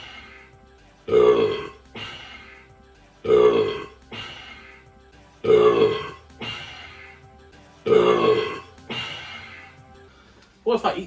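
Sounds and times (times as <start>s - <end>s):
man burping loudly: 1.1s - 2.0s, 3.2s - 4.0s, 5.4s - 6.2s, 7.8s - 8.7s.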